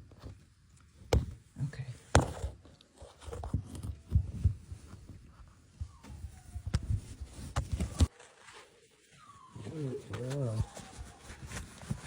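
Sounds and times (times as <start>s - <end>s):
dull thumps and bumps: 1.0s - 1.5s.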